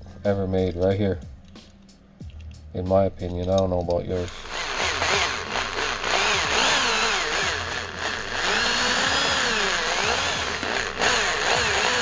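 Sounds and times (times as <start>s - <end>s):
small electric drill running: 4.2s - 12.0s.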